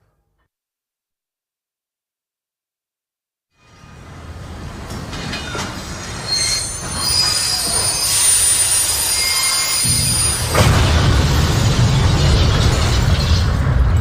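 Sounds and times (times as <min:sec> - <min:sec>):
rumbling rush of train: 0:03.6 - 0:14.0
train wheels squealing: 0:05.2 - 0:10.6
sharp bang: 0:09.8 - 0:13.6.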